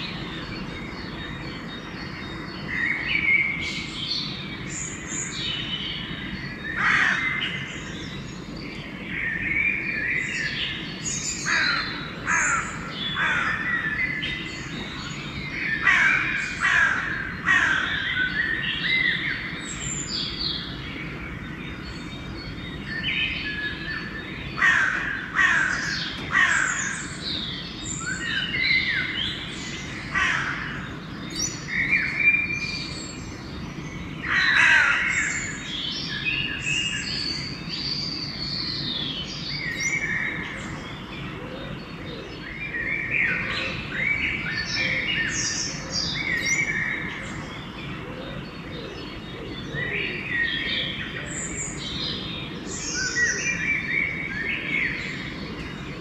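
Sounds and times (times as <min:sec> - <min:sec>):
songbirds singing and chirping: 0:00.0 - 0:56.0
crows cawing: 0:06.8 - 0:07.4, 0:11.5 - 0:13.7, 0:15.8 - 0:18.1, 0:24.6 - 0:27.1, 0:30.1 - 0:30.8, 0:34.3 - 0:35.5.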